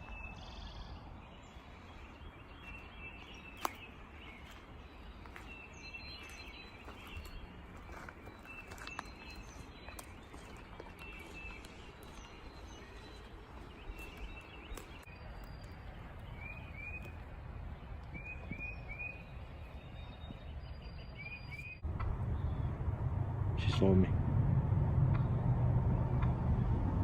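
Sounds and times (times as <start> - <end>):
small birds chirping: 0.0 - 22.7
steady low rumble: 0.0 - 27.0
louder low rumble: 21.8 - 27.0.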